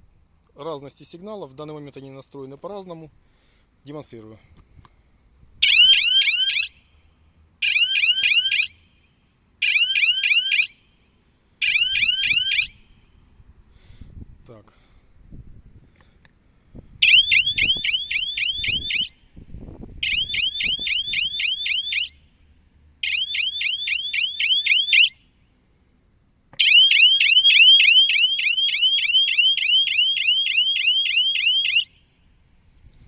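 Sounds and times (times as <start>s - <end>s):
electronic siren chirping: 5.6s - 6.8s, 7.6s - 8.8s, 9.6s - 10.8s, 11.6s - 12.9s, 17.0s - 19.2s, 20.0s - 22.2s, 23.0s - 25.2s, 26.6s - 32.0s.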